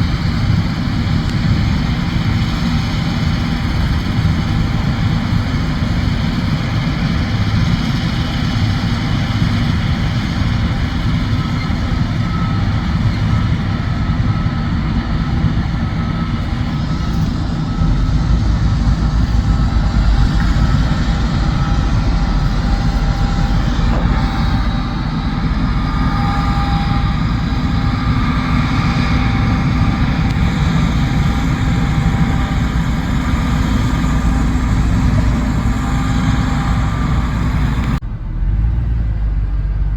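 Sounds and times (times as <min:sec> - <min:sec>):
faint steady whines: 0:00.0 - 0:38.0
combine harvester engine drone: 0:00.0 - 0:39.9.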